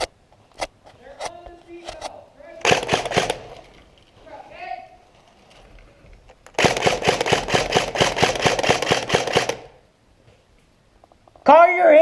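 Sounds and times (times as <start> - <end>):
airsoft gun rapid firing: 2.6 - 3.6, 6.5 - 9.8.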